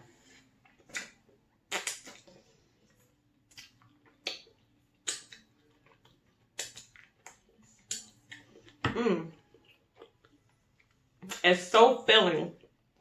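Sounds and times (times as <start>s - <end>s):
person chewing food: 0.0s - 11.4s
wet mouth smacks and clicks: 0.9s - 2.3s, 3.5s - 5.5s, 6.6s - 8.1s.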